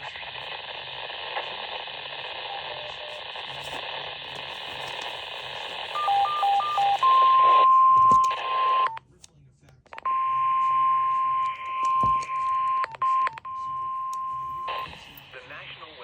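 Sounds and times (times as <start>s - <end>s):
radio receiver hissing: 0.0s - 8.7s, 14.1s - 16.0s
loud steady alert tone: 5.8s - 8.9s.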